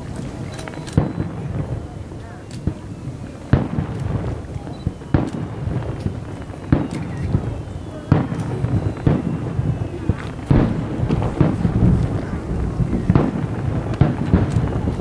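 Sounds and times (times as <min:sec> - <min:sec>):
fireworks booming: 0:00.0 - 0:15.0
low rumbling: 0:08.4 - 0:15.0.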